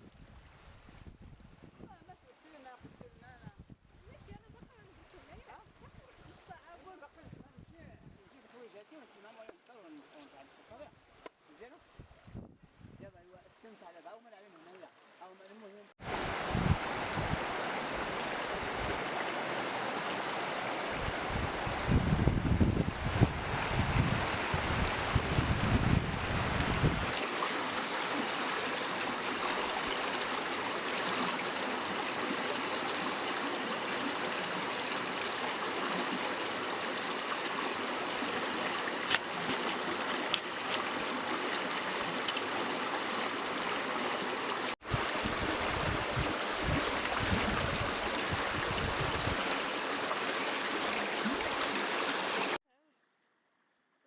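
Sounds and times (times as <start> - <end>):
wind buffeting microphone: 2.8 - 6.5, 11.9 - 13.1, 16.0 - 19.1, 20.9 - 27.2, 44.8 - 49.5
river water rushing: 16.0 - 52.6.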